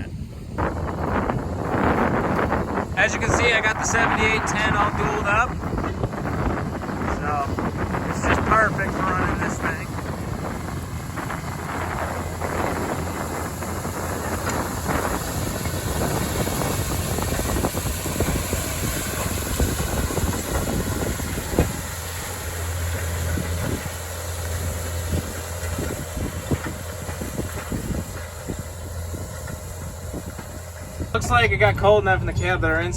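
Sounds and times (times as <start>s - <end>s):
diesel engine droning: 0.0s - 32.9s.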